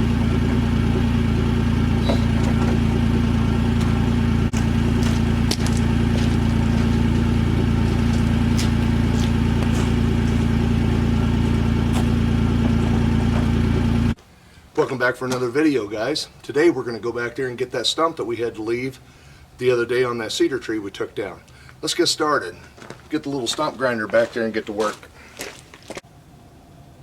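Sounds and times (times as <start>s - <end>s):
small petrol engine running: 0.0s - 14.2s.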